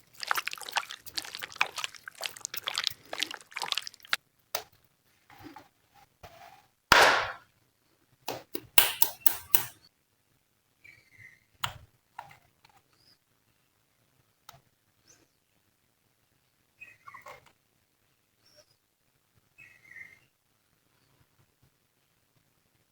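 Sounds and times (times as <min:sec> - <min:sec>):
slime squelch: 0:00.0 - 0:04.2
slime squishing and popping: 0:00.0 - 0:04.2.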